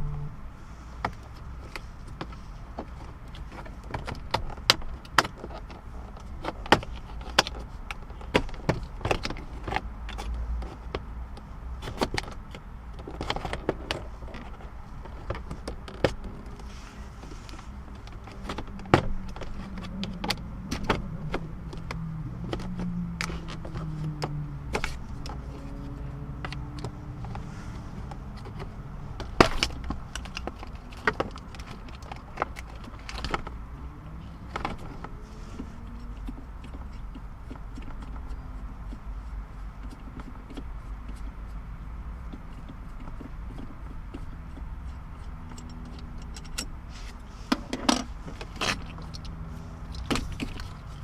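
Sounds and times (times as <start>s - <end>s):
plastic trim creaking: 11.8s - 16.7s, 17.5s - 38.4s
plastic clicks and rattles: 17.9s - 33.6s.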